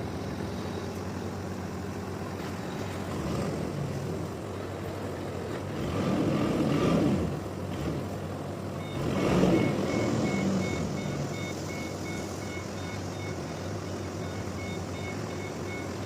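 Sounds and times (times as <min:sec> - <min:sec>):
heavy machine engine running: 0:00.0 - 0:16.0
reversing alarm beeps: 0:08.8 - 0:16.0.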